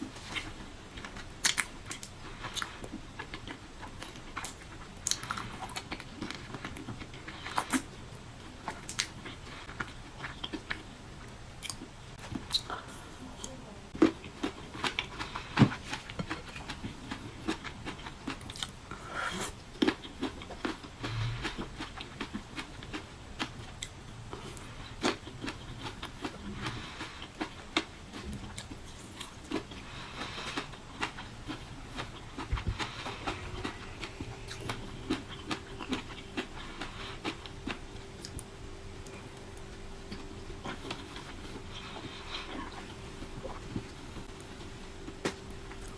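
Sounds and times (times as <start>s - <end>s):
faint steady hum: 0.0s - 45.9s
person chewing juicy fruit: 0.0s - 45.9s.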